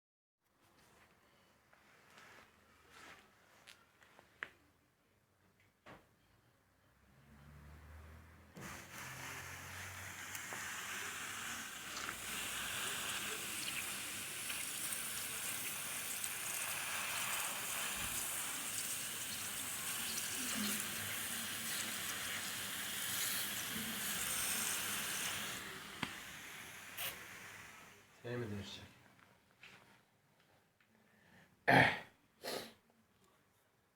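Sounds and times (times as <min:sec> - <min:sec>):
hiss of rushing water: 0:08.6 - 0:28.2.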